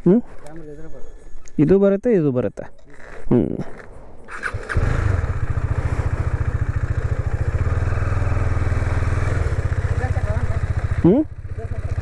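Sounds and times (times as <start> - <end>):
motorcycle engine running steadily: 4.4 - 12.0.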